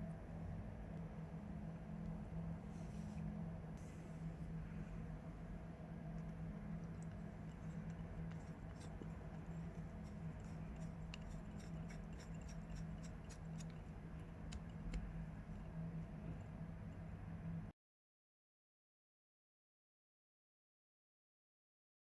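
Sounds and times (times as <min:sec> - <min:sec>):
steady low hum: 0:00.0 - 0:17.7
small clicks and ticks: 0:06.2 - 0:15.7.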